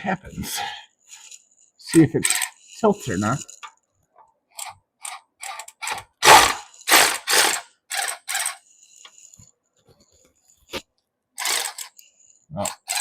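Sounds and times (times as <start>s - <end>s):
jack ratcheting: 1.1s - 3.8s, 4.5s - 9.4s, 11.4s - 13.0s.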